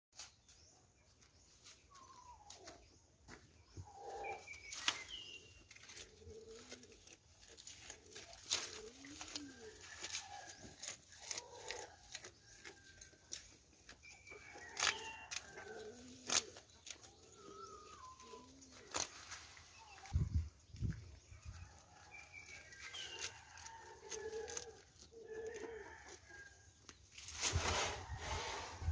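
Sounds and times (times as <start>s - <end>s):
goats munching feed: 4.5s - 19.9s, 21.2s - 27.1s.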